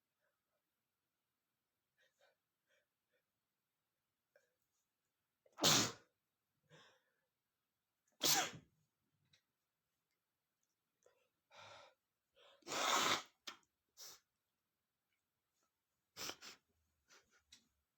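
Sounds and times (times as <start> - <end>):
faint sniffs: 14.0 - 14.3, 16.2 - 17.6.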